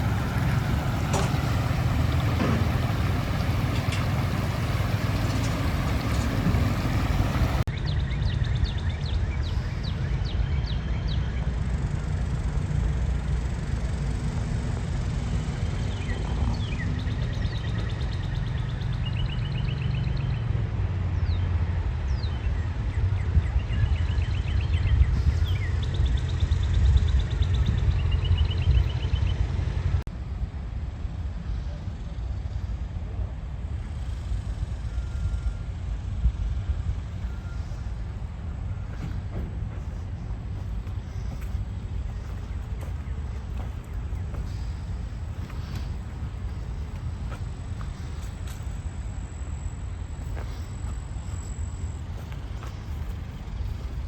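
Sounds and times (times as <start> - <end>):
birds chirping in trills: 0.0 - 7.7, 37.2 - 54.0
steady low rumble: 0.0 - 7.7, 35.9 - 54.0.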